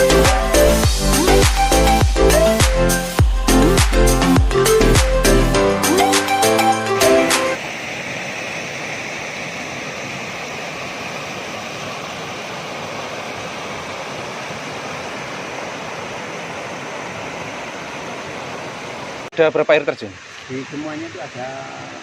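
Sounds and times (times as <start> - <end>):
music track: 0.0 - 7.6
flowing river water: 0.0 - 22.0.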